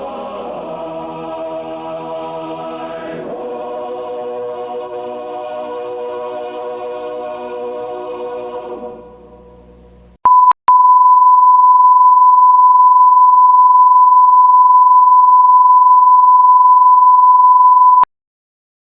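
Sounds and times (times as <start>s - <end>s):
broadcast test tone: 10.2s - 18.1s.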